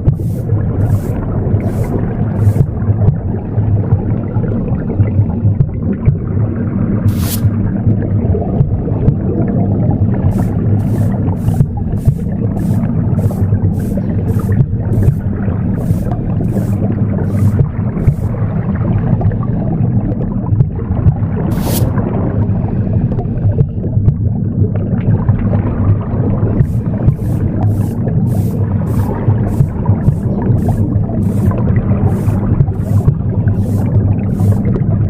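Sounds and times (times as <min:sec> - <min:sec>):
broom sweeping strokes: 0:00.0 - 0:02.8, 0:07.1 - 0:07.6, 0:10.3 - 0:18.4, 0:21.5 - 0:22.0, 0:26.6 - 0:34.8
womb sound low rumble: 0:00.0 - 0:35.0.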